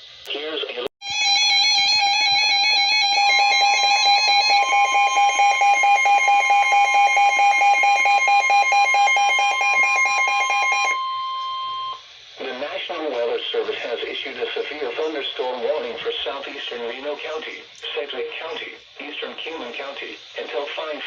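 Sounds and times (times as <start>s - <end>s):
higher steady tone: 1.0s - 12.0s
pulsing electronic alarm tone: 1.0s - 12.0s.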